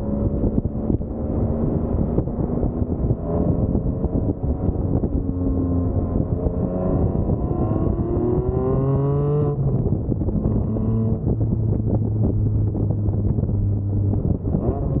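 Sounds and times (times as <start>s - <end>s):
sports car engine accelerating: 0.0s - 15.0s.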